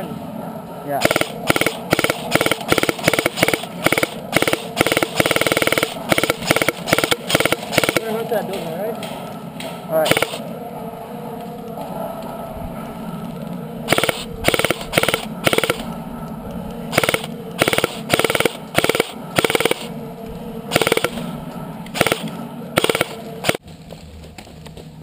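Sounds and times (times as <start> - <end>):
airsoft guns firing bursts: 1.0 - 8.2, 10.1 - 10.4, 13.9 - 15.9, 16.9 - 19.9, 20.7 - 21.2, 21.9 - 23.6.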